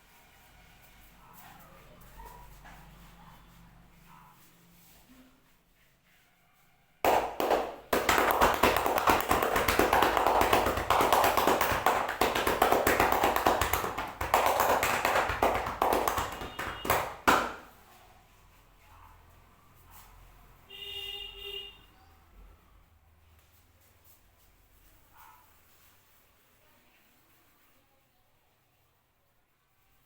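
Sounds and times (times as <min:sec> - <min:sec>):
hands tapping on body: 0:07.1 - 0:17.7.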